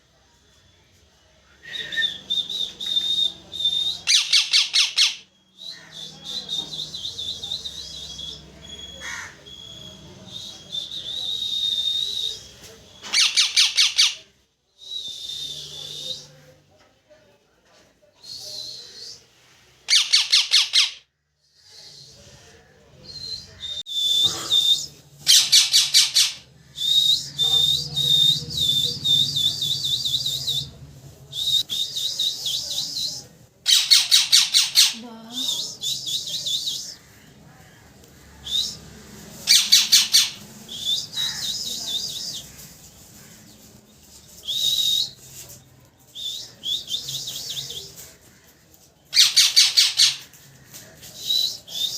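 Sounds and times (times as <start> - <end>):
parrot chirping and squawking: 4.1 - 5.2, 13.1 - 14.2, 19.9 - 21.0, 25.2 - 26.4, 33.6 - 35.0, 39.4 - 40.4, 49.1 - 50.3.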